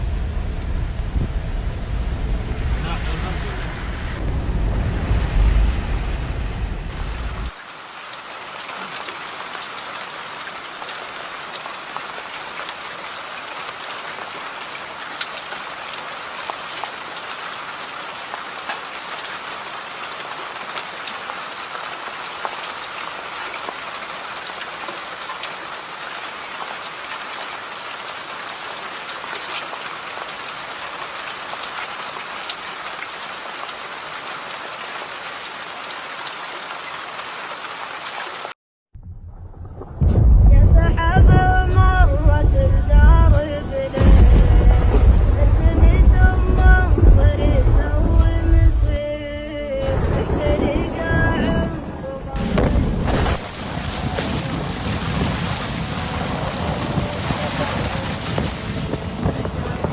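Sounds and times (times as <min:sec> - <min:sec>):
wind rumble on microphone: 0:00.0 - 0:07.6, 0:39.0 - 0:49.1, 0:49.8 - 0:59.9
raindrops ticking on surfaces: 0:00.0 - 0:38.5, 0:52.4 - 0:59.9
steady rainfall hiss: 0:00.0 - 0:38.5, 0:52.4 - 0:59.9.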